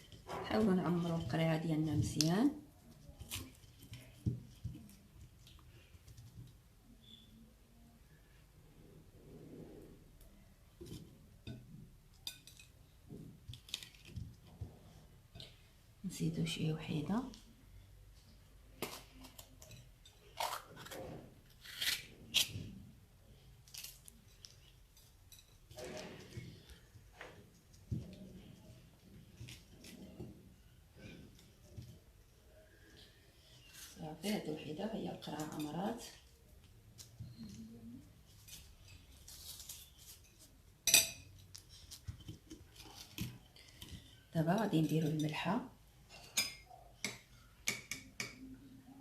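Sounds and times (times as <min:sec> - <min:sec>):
kitchenware rustling: 0:00.0 - 0:06.6, 0:19.0 - 0:48.5
pepper pieces scraping in jar: 0:19.0 - 0:22.6.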